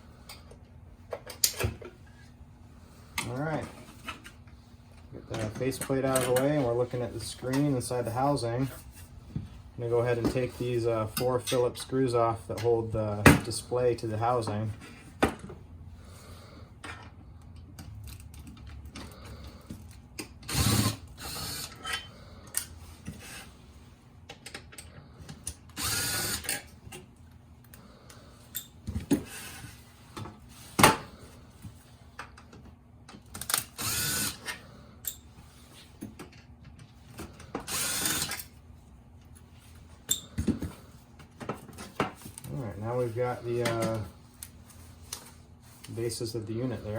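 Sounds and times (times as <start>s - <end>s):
electric screwdriver running: 25.8s - 26.5s, 33.6s - 34.4s.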